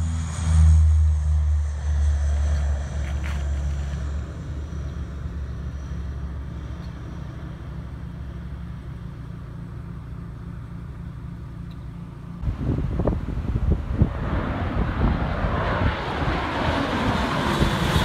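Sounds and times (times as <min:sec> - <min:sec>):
airliner engines rumbling: 0:00.0 - 0:18.0
gusty wind on microphone: 0:12.4 - 0:18.0.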